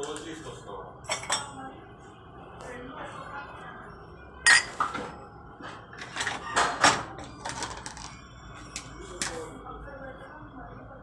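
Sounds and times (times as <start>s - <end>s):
dishes and cutlery clinking: 1.0s - 1.6s, 4.4s - 9.4s.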